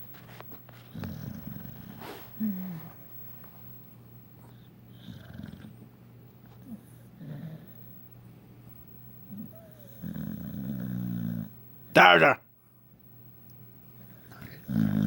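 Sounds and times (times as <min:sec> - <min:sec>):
dog snoring softly: 0:00.0 - 0:03.6, 0:04.3 - 0:08.1, 0:09.2 - 0:11.6, 0:14.0 - 0:15.0.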